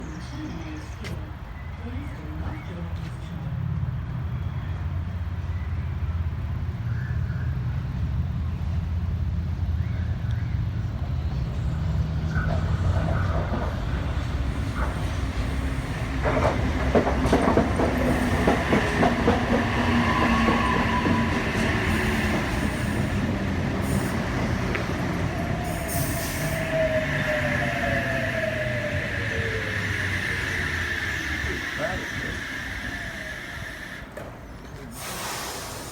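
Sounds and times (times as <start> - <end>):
electric train humming: 0.0 - 35.9
wheels clicking over rail joints: 12.4 - 35.2
train whine falling in pitch: 24.2 - 34.3.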